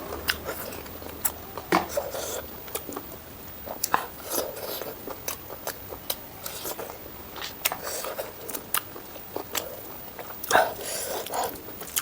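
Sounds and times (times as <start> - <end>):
person chewing: 0.0 - 12.0.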